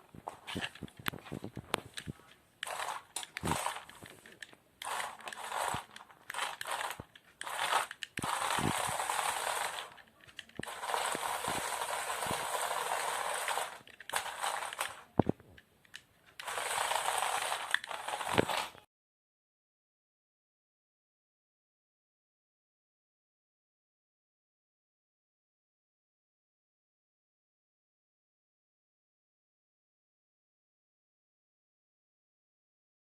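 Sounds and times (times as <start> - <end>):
plastic parts clicking: 0.1 - 18.8
toy motor and gears whirring: 1.8 - 15.2, 16.3 - 18.8.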